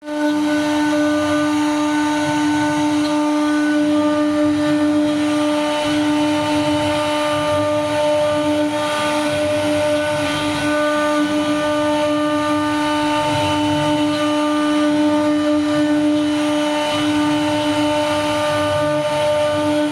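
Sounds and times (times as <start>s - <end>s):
cutter rumbling through wood: 0.0s - 19.9s
router spindle whine: 0.0s - 19.9s.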